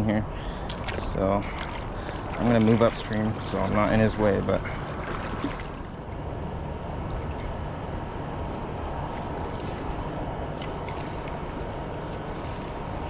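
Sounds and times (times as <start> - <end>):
short sharp splashes: 0.6 - 6.0
flowing river water: 0.6 - 6.3.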